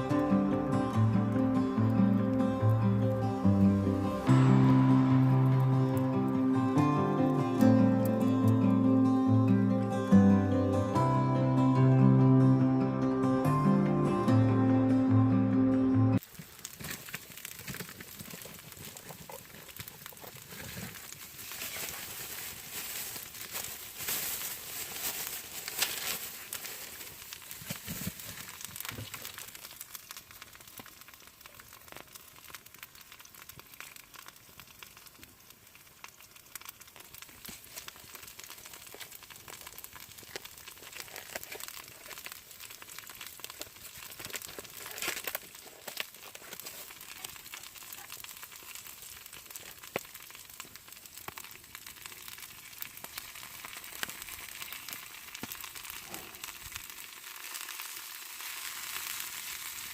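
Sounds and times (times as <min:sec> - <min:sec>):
food sizzling in frying pan: 0:18.2 - 0:59.9.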